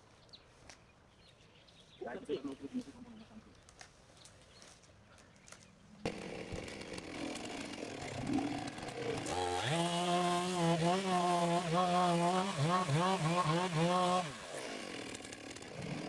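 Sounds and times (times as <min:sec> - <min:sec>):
chainsaw revving: 0:06.0 - 0:16.0.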